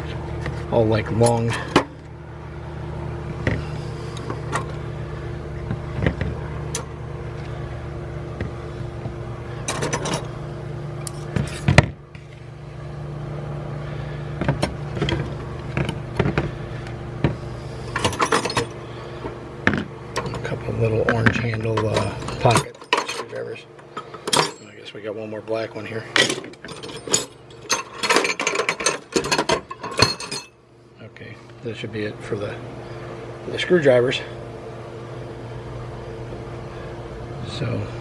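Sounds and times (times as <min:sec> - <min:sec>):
steady low hum: 0:00.0 - 0:38.0
metal hand tools clinking: 0:24.3 - 0:24.8, 0:26.2 - 0:30.5.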